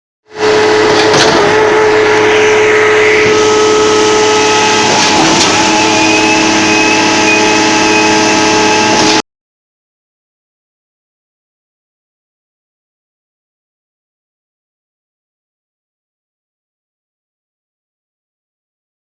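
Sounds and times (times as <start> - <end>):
concrete pump drone: 0.3 - 9.2.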